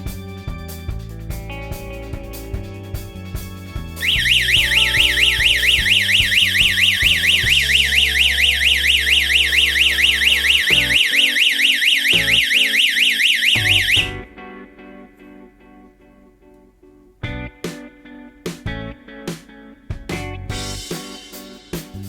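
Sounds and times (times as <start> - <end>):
background music: 0.0 - 22.0
electronic siren rapid warble: 4.0 - 14.1.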